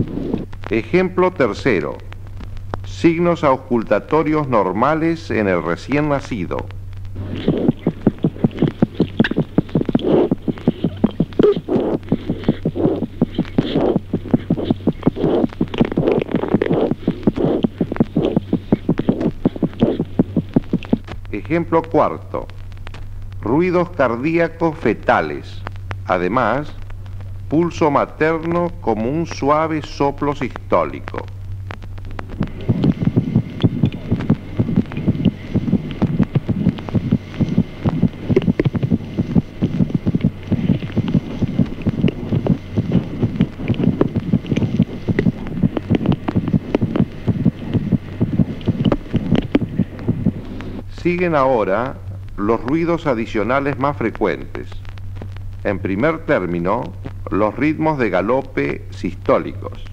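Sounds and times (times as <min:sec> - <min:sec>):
fast heartbeat: 0:00.0 - 0:02.9, 0:06.6 - 0:23.2, 0:30.9 - 0:50.9
low hum: 0:00.0 - 0:59.9
soft pulse murmur: 0:00.0 - 0:59.9.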